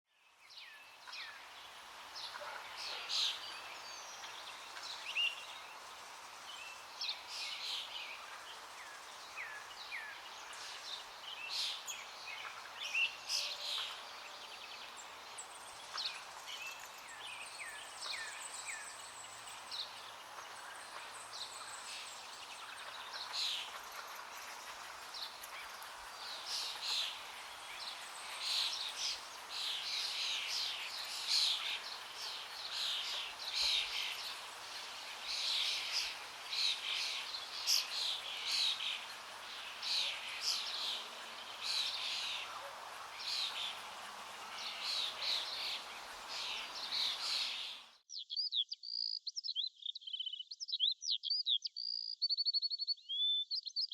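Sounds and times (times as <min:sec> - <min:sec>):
river rushing: 0:01.2 - 0:47.9
small birds chirping and whistling: 0:02.2 - 0:53.9.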